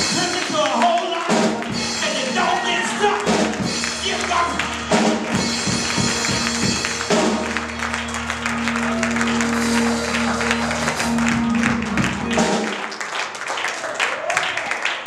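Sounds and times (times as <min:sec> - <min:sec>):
congregation hand claps: 0:00.0 - 0:15.0
keyboard holding a chord: 0:01.6 - 0:13.0.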